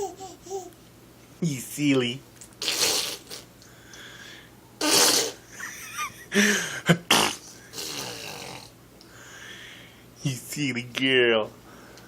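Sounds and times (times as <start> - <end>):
child blowing raspberries: 2.6 - 3.5, 4.8 - 5.4, 7.2 - 8.7.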